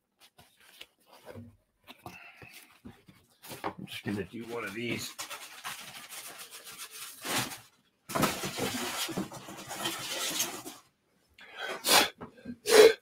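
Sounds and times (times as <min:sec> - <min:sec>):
styrofoam crunching and rubbing: 0:04.3 - 0:10.8.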